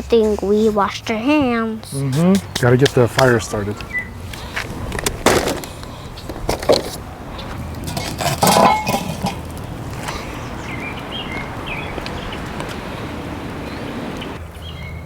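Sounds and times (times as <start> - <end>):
steady outdoor hiss: 0.0 - 15.0
cookware clinking and clattering: 7.9 - 9.4.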